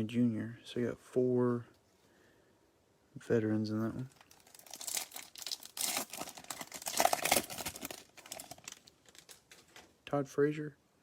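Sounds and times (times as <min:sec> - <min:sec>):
foil wrapper crinkling and tearing: 0:04.0 - 0:09.9.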